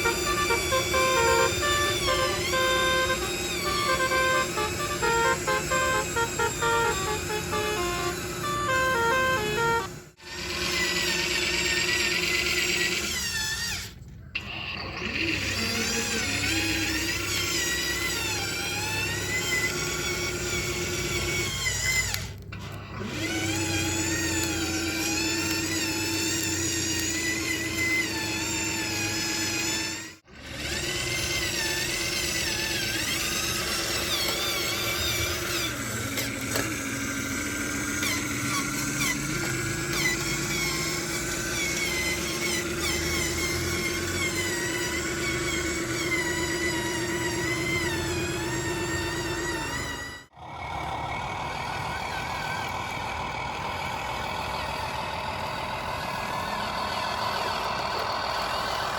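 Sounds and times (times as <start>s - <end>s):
warbling horn melody: 0.0s - 10.1s.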